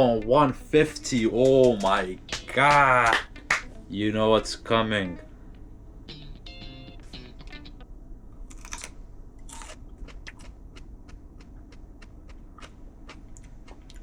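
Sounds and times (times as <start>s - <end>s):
crunchy bites into pepper: 8.5s - 10.5s
wet chewing clicks: 8.5s - 14.0s.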